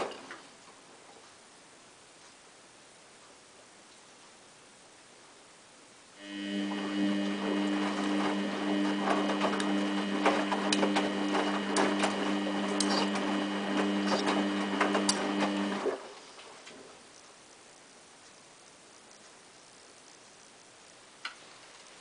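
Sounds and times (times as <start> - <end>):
washing machine humming: 6.2 - 16.3.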